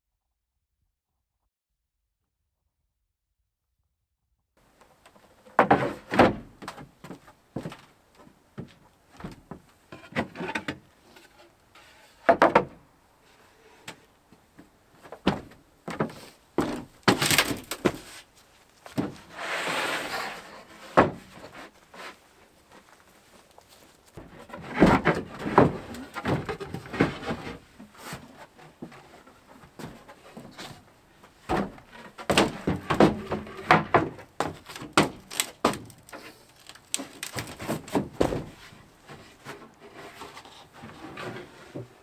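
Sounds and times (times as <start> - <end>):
knocks and clatters of parts: 5.0 - 7.9, 8.6 - 12.8, 15.0 - 18.3, 23.9 - 40.4.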